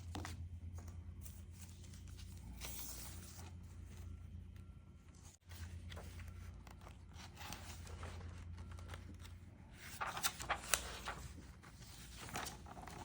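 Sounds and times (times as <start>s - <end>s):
paper rustling and scraping: 5.1s - 13.0s
sharp paper crinkles: 5.5s - 13.0s.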